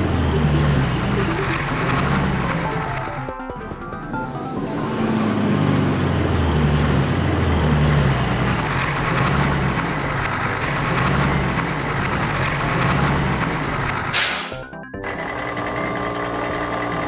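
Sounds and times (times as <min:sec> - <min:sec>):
heavy vehicle engine running: 0:00.0 - 0:17.0.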